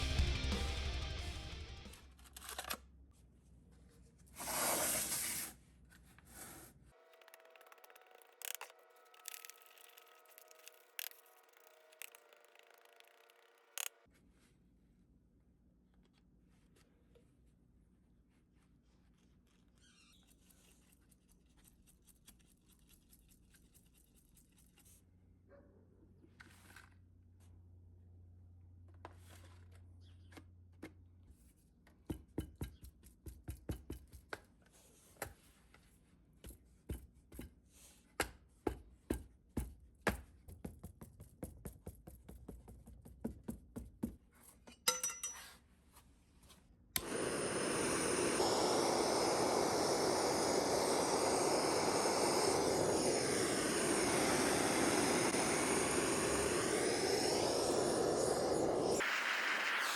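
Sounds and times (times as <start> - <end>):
furnace burner roaring: 47.0 - 59.9.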